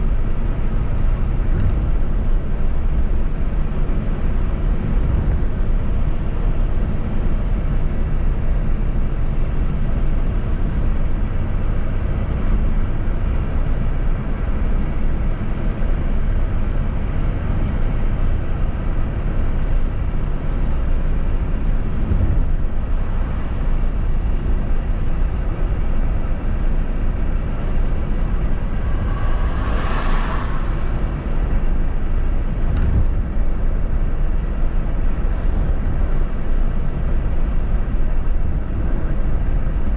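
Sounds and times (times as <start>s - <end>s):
vehicle highway rumble: 0.0s - 39.9s
brief louder rush: 27.4s - 32.8s.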